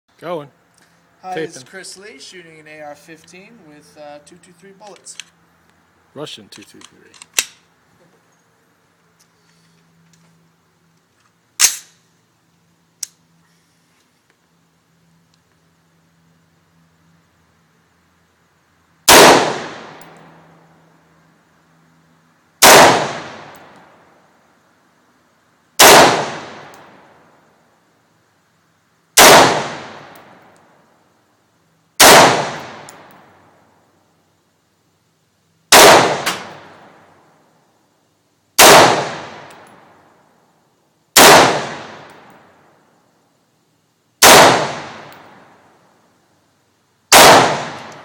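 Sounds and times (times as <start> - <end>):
rifle shots echoing: 19.1 - 20.2, 22.6 - 23.8, 25.8 - 27.0, 29.2 - 30.4, 32.0 - 33.2, 35.7 - 37.0, 38.6 - 39.8, 41.2 - 42.4, 44.2 - 45.5, 47.1 - 48.0.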